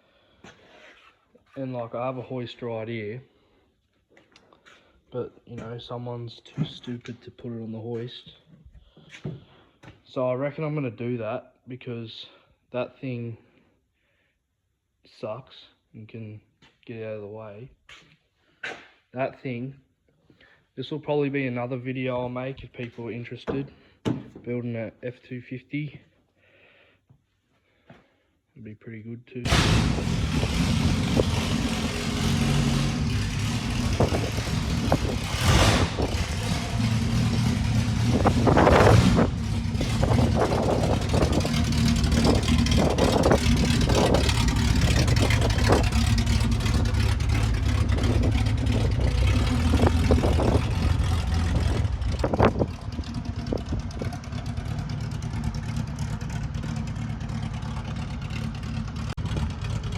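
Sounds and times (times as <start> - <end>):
knocks and clunks: 23.4 - 24.5
car engine running: 29.5 - 59.9.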